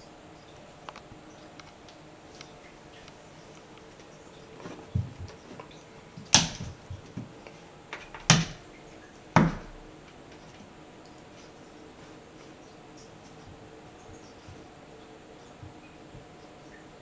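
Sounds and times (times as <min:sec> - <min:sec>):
light taps and thuds: 0:02.4 - 0:08.7, 0:09.4 - 0:10.7, 0:13.2 - 0:14.8, 0:15.6 - 0:16.4
loud sharp knocks: 0:06.3 - 0:07.3, 0:08.0 - 0:08.6, 0:09.4 - 0:10.0.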